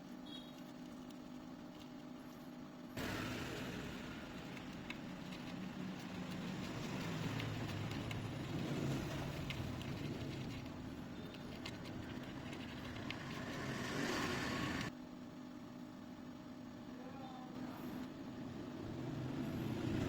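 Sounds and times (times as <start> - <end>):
fan-driven tool whirring: 0.0 - 15.0.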